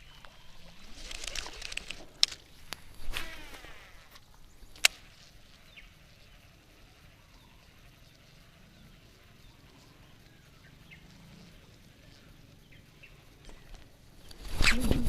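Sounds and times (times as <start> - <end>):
faint high chirps: 5.5 - 13.6.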